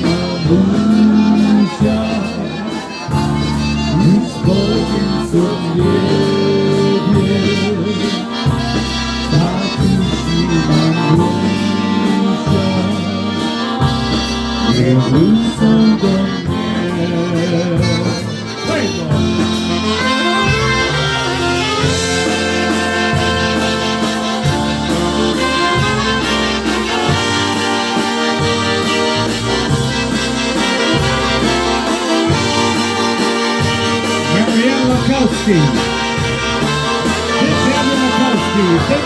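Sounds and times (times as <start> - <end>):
accordion: 0.0 - 39.0
bass: 0.0 - 39.0
brass instruments: 0.0 - 39.0
drums with steady beat: 0.0 - 39.0.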